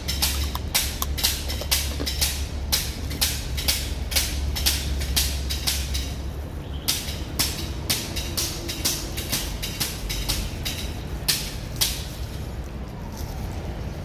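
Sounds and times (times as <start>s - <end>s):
crackers crunching being chewed: 0.0s - 2.2s.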